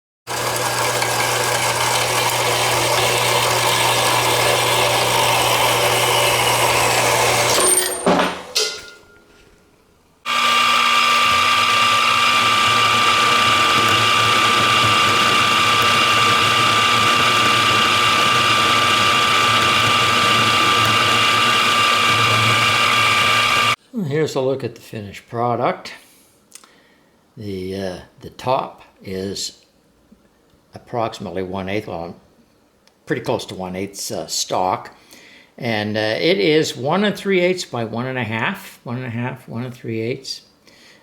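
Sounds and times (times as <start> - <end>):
metalworking power tool running: 0.3 - 9.2, 10.3 - 23.8
machine high whine: 10.3 - 23.8.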